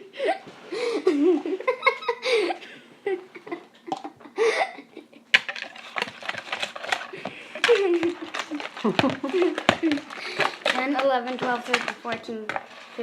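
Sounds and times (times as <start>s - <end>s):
girl laughing and giggling: 0.0s - 5.3s, 7.4s - 10.4s.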